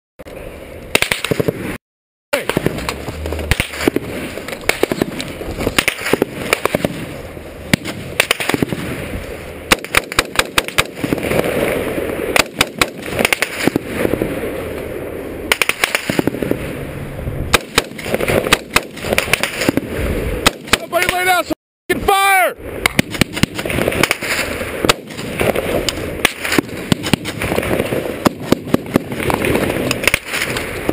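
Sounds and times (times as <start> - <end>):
small-arms gunfire: 0.9 - 7.1, 7.7 - 9.0, 9.7 - 11.6, 12.3 - 14.2, 15.5 - 16.6, 17.5 - 21.3, 22.8 - 30.9.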